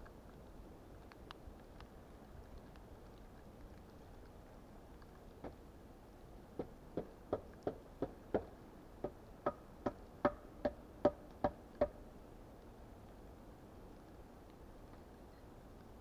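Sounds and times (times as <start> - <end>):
sharp knocks on wood: 6.6 - 12.0.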